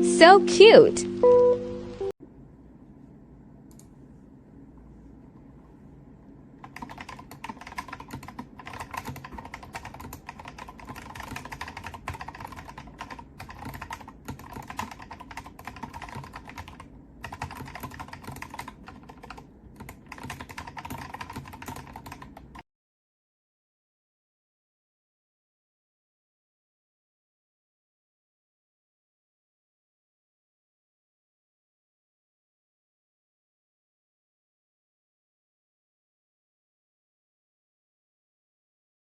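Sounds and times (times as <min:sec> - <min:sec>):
mechanical keyboard typing: 0:06.6 - 0:22.6.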